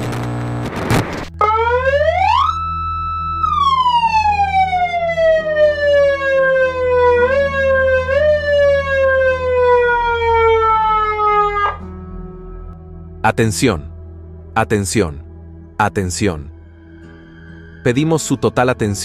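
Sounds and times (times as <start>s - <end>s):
warning siren: 1.3s - 12.2s.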